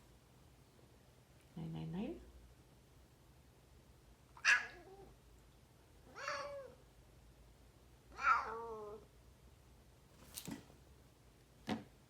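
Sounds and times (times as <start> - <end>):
cat meowing: 4.4 - 5.1, 6.1 - 6.8, 8.1 - 9.0.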